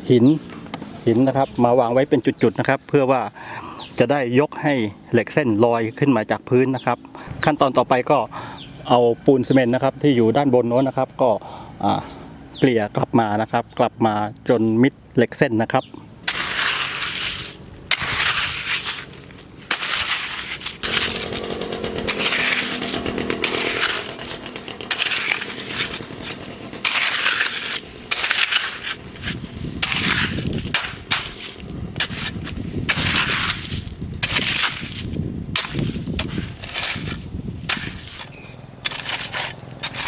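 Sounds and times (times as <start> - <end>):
wet concrete being scraped: 16.2 - 40.0.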